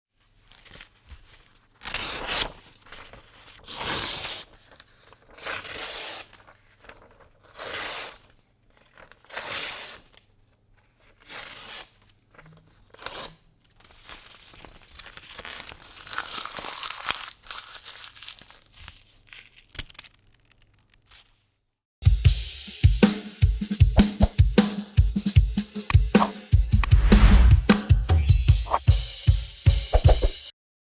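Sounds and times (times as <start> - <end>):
paper tearing: 0.5 - 10.2, 11.1 - 21.5.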